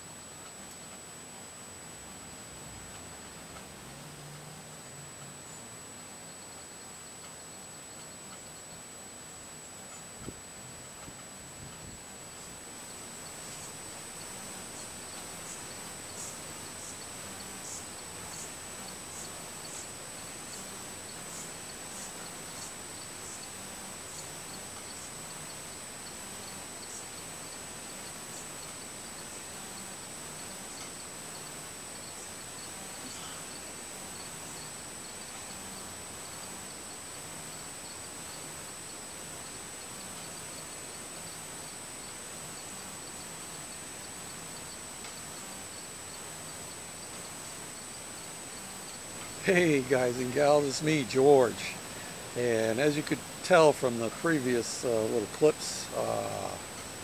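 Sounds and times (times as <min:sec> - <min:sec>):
outdoor background hiss: 0:00.0 - 0:57.0
faint ticks: 0:02.8 - 0:04.5, 0:07.2 - 0:08.6.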